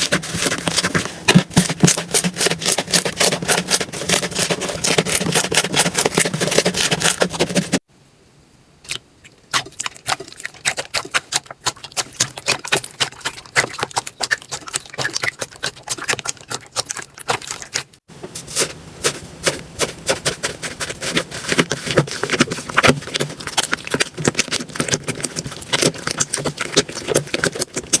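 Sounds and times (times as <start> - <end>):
slime crackling and popping: 21.4 - 28.0.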